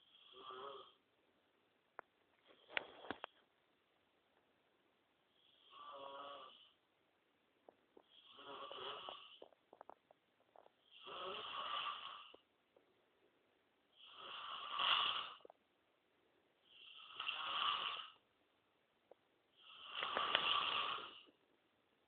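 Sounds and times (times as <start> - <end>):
person snoring: 0.0 - 1.0, 5.4 - 6.8, 8.0 - 9.6, 10.8 - 12.4, 14.0 - 15.5, 16.7 - 18.2, 19.6 - 21.4.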